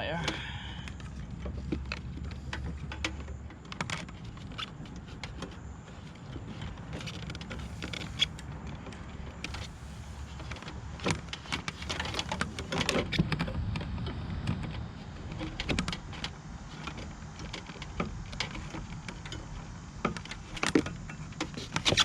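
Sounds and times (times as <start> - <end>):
steady low rumble: 5.6 - 15.2.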